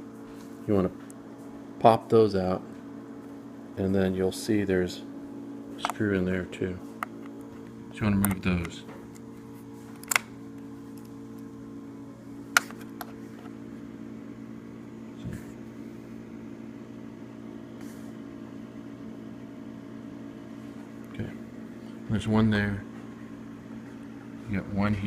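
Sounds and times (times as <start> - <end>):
steady background hum: 0.0 - 25.0
screwdriver clicks on plastic: 10.0 - 10.3.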